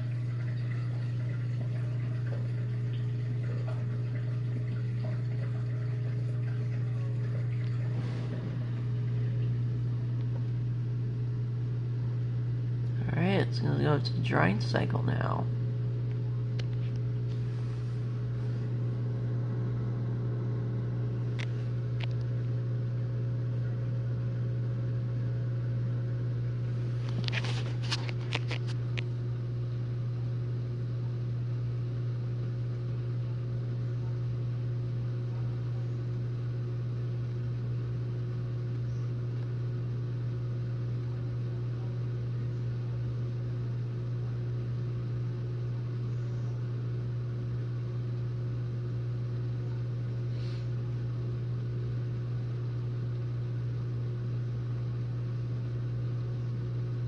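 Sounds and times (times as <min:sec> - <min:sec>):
dishwasher humming: 0:00.0 - 0:28.5.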